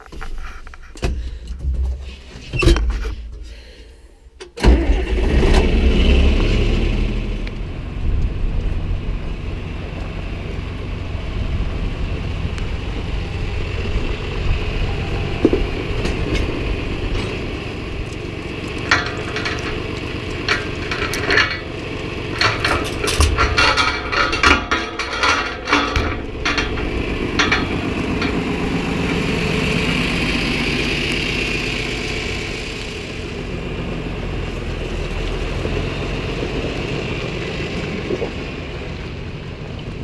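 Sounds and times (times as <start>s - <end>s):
rattling and clanking: 0.0s - 3.8s, 12.2s - 33.3s
farm engine running: 0.0s - 40.0s.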